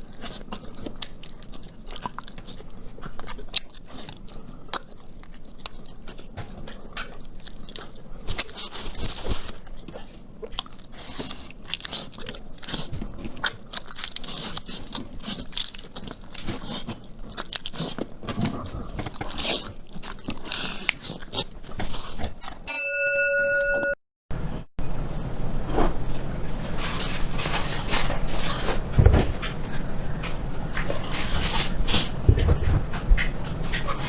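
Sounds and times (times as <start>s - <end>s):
person biting and chewing food: 0.0s - 22.7s.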